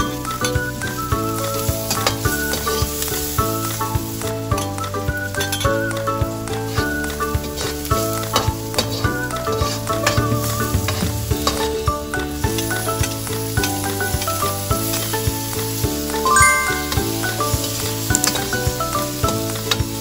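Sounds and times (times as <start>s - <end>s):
ukulele music: 0.0s - 12.0s, 16.0s - 18.8s
food sizzling in a frying pan: 0.0s - 20.0s.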